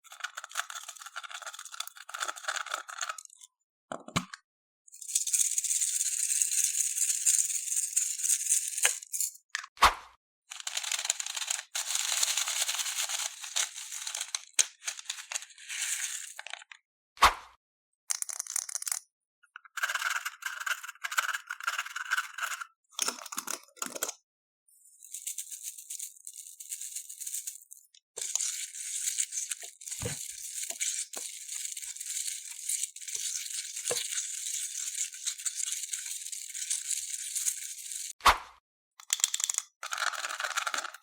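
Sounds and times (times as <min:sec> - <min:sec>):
foam beads rattling and crackling: 0:10.5 - 0:16.6, 0:25.0 - 0:38.2.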